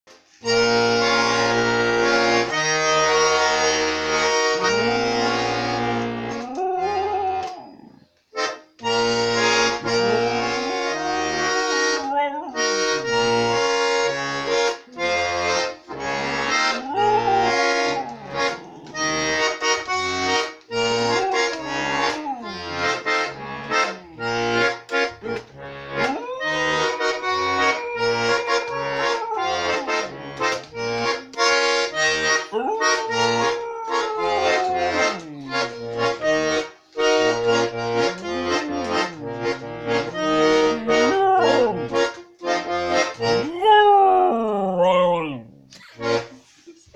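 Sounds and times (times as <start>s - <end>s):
accordion playing a tune: 0.4s - 6.6s, 8.3s - 43.5s, 46.0s - 46.4s
dog howling: 4.8s - 8.1s, 9.8s - 13.8s, 16.4s - 19.5s, 20.9s - 30.6s, 32.2s - 36.2s, 37.4s - 42.2s, 43.2s - 45.7s.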